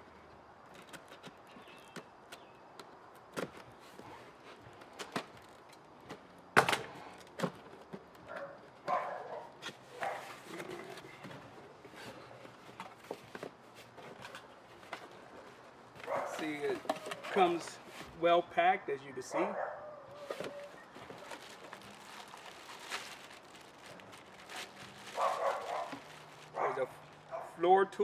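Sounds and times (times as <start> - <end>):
packing rustling: 20.1 - 27.6
cardboard box being opened: 20.2 - 27.2.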